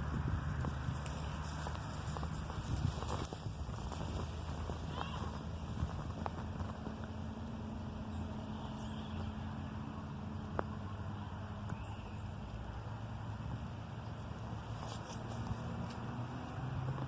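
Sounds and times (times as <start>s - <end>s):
vehicle engine hum: 0.0s - 17.0s.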